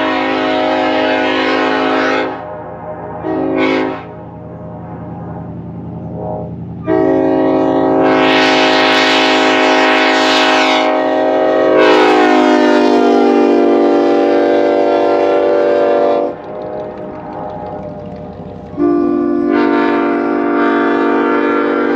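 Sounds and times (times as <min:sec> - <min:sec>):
train horn chord: 0:00.0 - 0:04.7, 0:06.0 - 0:21.9
low steady hum: 0:16.1 - 0:20.6.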